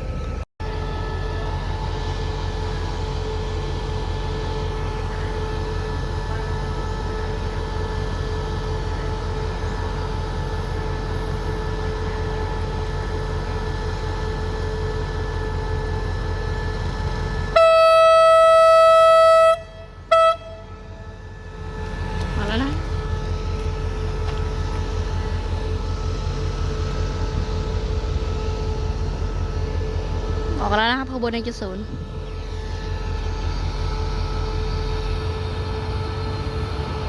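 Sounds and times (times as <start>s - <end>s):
diesel locomotive idling: 0.0s - 37.0s
locomotive horn blast: 17.3s - 22.6s.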